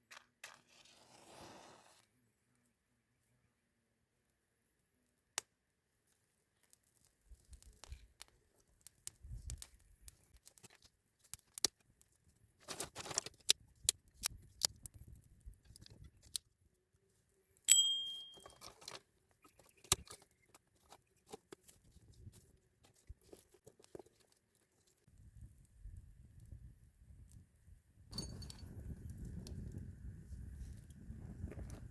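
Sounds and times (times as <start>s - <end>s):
packaging rustling and tearing: 12.6s - 13.5s
sharp ringing clink: 17.7s - 18.6s, 28.1s - 28.6s.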